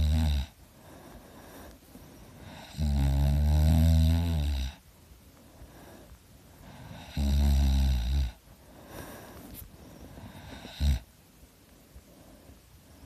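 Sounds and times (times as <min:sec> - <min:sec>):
person snoring loudly: 0:00.0 - 0:00.6, 0:02.4 - 0:04.8, 0:06.7 - 0:08.4, 0:10.3 - 0:11.1
quiet breathing: 0:00.0 - 0:13.0.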